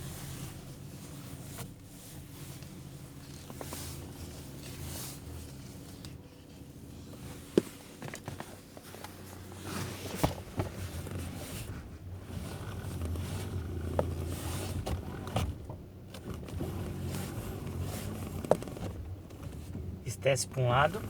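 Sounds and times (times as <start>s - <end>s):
car engine running: 0.0s - 21.0s
steering clicks and knocks: 10.0s - 21.0s.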